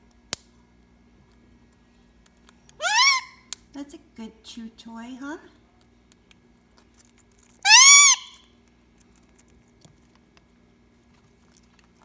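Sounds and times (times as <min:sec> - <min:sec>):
parrot call: 0:02.8 - 0:03.5, 0:07.6 - 0:08.4
clicks of chewing on a shell: 0:05.8 - 0:07.6, 0:08.6 - 0:12.0.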